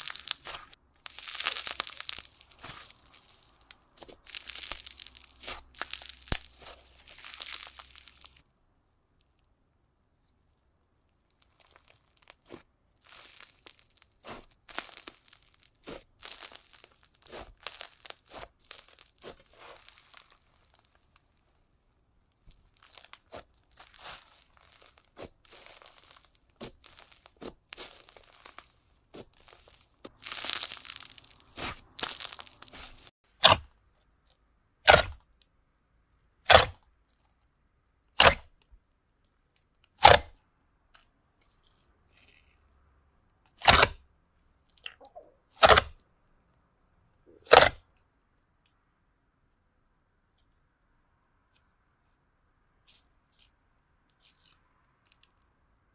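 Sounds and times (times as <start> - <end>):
slime crackling and clicking: 0.0 - 8.4, 11.3 - 21.3, 22.6 - 33.6, 43.5 - 44.0
loud sharp slime pops: 34.8 - 35.2, 36.5 - 36.8, 40.0 - 40.4, 43.6 - 44.0.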